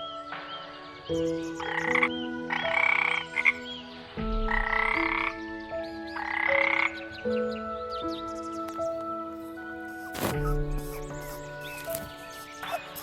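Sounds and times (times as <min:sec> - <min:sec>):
background music with sustained notes: 0:00.0 - 0:13.0
frog croaking: 0:01.8 - 0:03.6, 0:06.2 - 0:07.0, 0:11.0 - 0:13.0.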